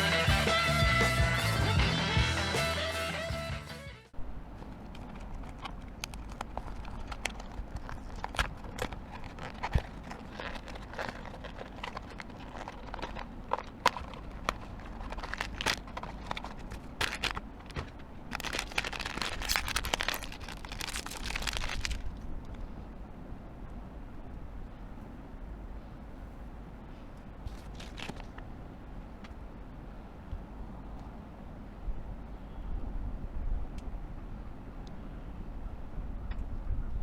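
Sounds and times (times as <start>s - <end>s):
wrapping crinkling: 4.5s - 22.2s, 27.5s - 28.4s
cardboard and plastic clicks: 4.6s - 22.0s.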